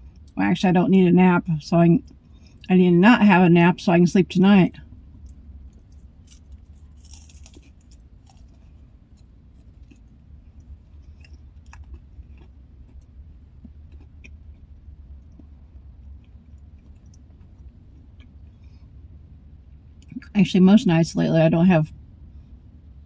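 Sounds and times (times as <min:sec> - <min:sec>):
steady low hum: 0:00.0 - 0:23.0
person chewing crunchy snack: 0:05.2 - 0:18.6.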